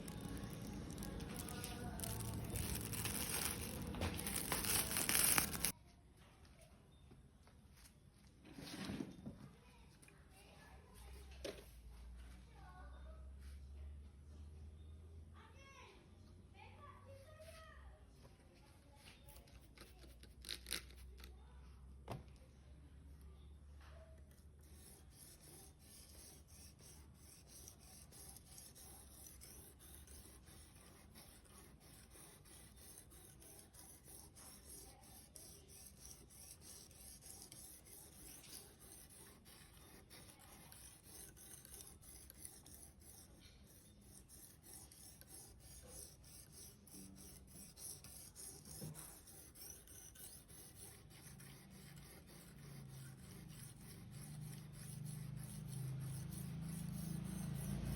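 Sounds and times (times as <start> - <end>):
knife rasping on sharpener: 0.0 - 5.8, 24.6 - 57.9.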